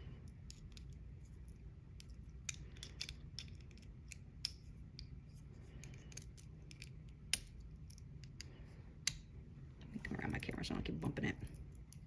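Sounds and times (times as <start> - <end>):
steady low hum: 0.0 - 12.0
lock parts clicking: 2.0 - 5.1.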